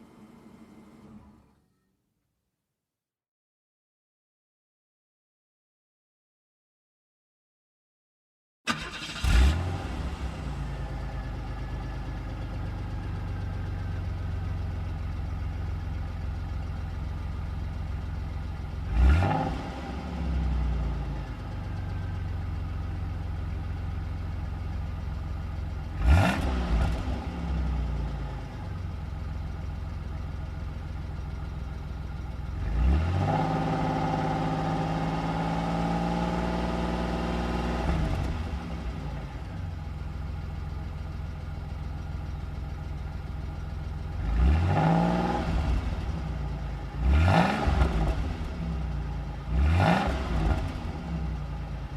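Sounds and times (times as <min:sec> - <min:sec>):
car engine revving: 0:08.7 - 0:11.6, 0:18.8 - 0:20.7, 0:25.9 - 0:27.8, 0:32.5 - 0:39.4, 0:44.1 - 0:46.3, 0:46.9 - 0:51.9
car engine idling: 0:08.7 - 0:19.0, 0:20.1 - 0:26.2, 0:27.1 - 0:32.7, 0:38.3 - 0:44.4, 0:45.7 - 0:47.1, 0:47.9 - 0:49.6, 0:50.3 - 0:51.9
car engine starting: 0:08.7 - 0:51.9.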